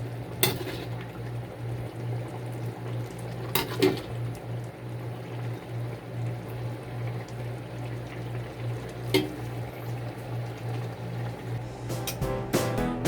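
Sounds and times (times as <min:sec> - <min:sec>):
soup bubbling in a pot: 0:00.0 - 0:11.6.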